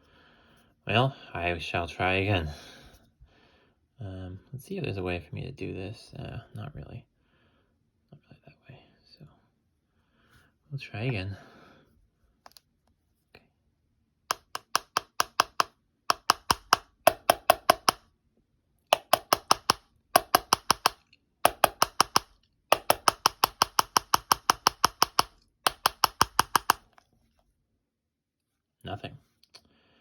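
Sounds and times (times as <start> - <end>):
rapid clicks from a phone: 14.3 - 18.0, 18.9 - 27.0.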